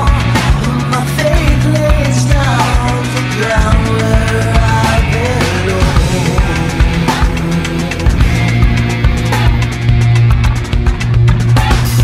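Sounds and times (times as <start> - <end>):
rock music: 0.0 - 12.0.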